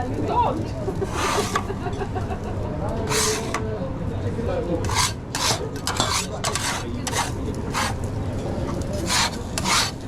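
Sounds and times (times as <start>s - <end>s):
low kitchen hum: 0.0s - 10.0s
utensil scraping a pan: 1.0s - 1.8s, 3.0s - 3.7s, 4.8s - 10.0s.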